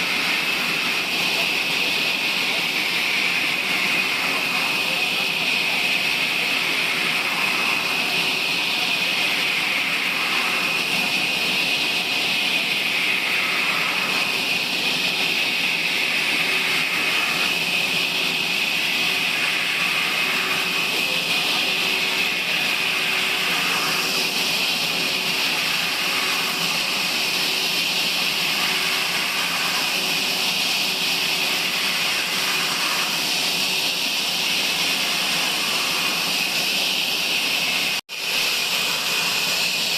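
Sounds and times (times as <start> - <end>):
sawmill saw whining: 0.0 - 39.9.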